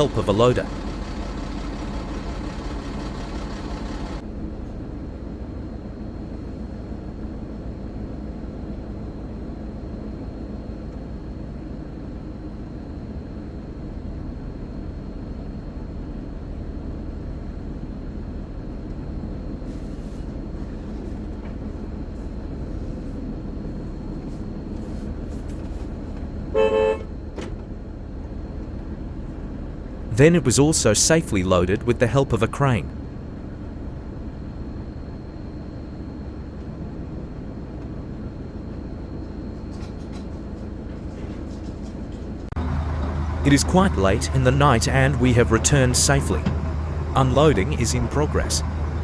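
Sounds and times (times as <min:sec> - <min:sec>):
vehicle engine running: 0:00.0 - 0:49.0
car horn toot: 0:26.5 - 0:27.1.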